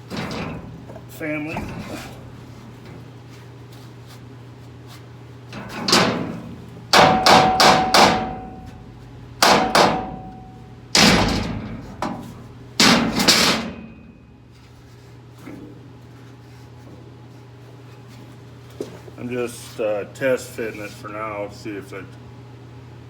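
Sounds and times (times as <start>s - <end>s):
steel plate clanging: 0.0s - 3.1s, 5.6s - 14.2s.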